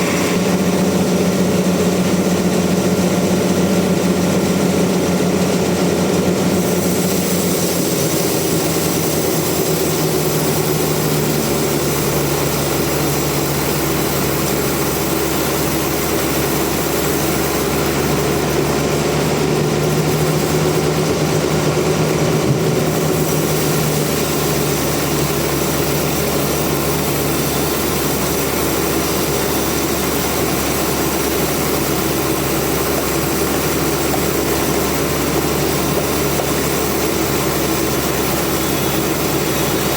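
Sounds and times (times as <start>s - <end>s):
sawmill machine hum: 0.0s - 39.9s.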